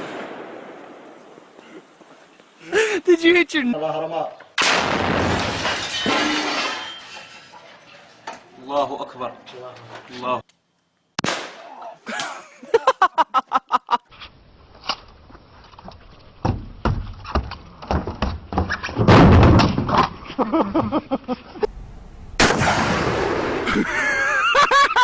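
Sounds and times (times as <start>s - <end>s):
person speaking: 2.6s - 4.4s
heavy blast: 4.6s - 5.8s, 21.8s - 24.0s
gunshots: 4.6s - 6.4s, 11.2s - 11.7s, 22.4s - 23.8s.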